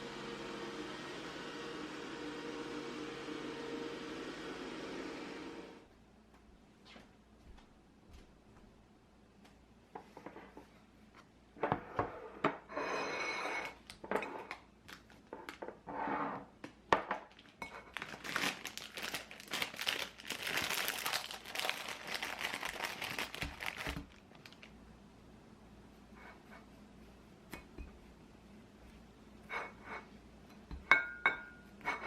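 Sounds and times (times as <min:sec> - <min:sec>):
packaging crinkling and rustling: 0:13.9 - 0:15.6, 0:17.2 - 0:24.8.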